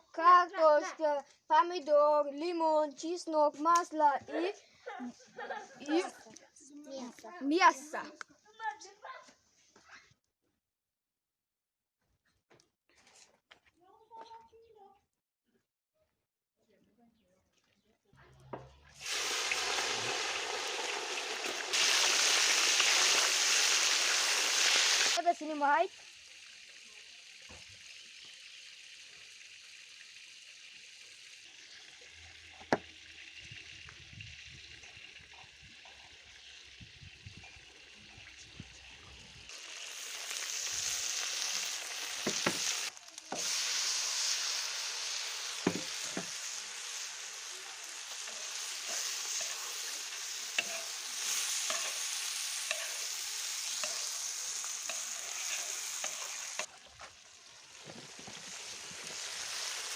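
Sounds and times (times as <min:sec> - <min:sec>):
food sizzling in oil: 0:19.0 - 0:59.9.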